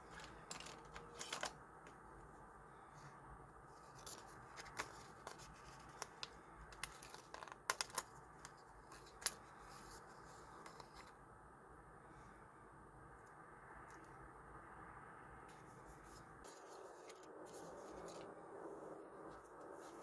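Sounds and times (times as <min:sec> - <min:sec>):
paper rustling: 0:00.0 - 0:01.6, 0:03.7 - 0:11.1.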